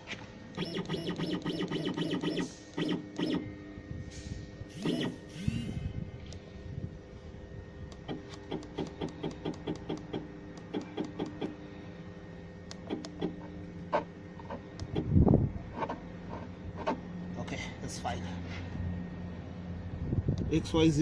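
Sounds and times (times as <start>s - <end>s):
electrical hum: 0.0s - 21.0s
stepper motors jogging: 0.5s - 3.6s, 4.7s - 6.0s.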